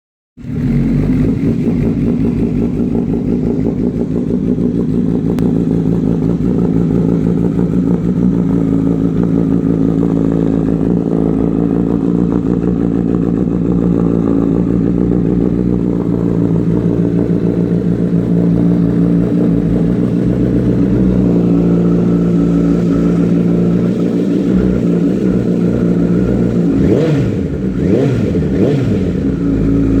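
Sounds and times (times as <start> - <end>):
motorcycle engine idling and revving: 0.4 - 30.0.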